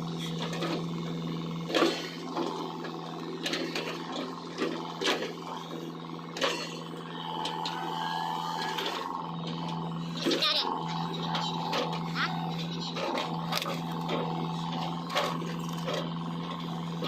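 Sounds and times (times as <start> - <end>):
excavator diesel engine running: 0.0 - 17.0
high-pitched whine: 6.6 - 10.2.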